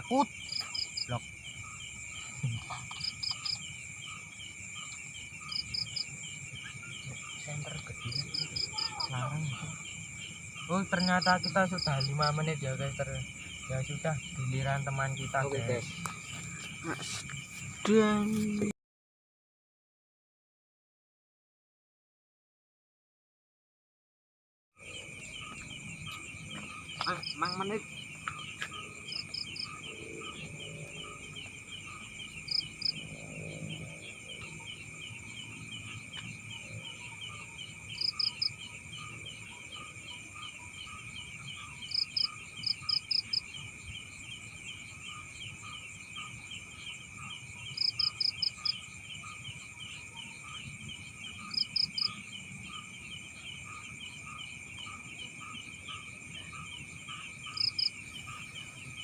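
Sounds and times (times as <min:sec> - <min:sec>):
crickets trilling: 0:00.0 - 0:18.7, 0:24.8 - 0:59.0.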